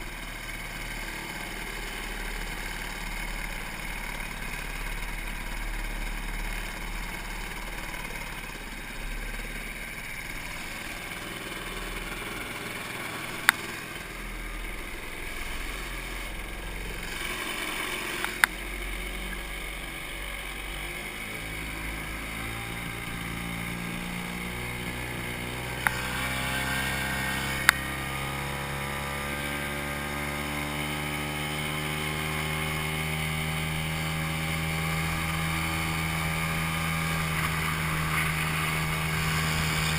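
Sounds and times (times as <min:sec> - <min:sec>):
outboard motor running: 0:00.0 - 0:39.9.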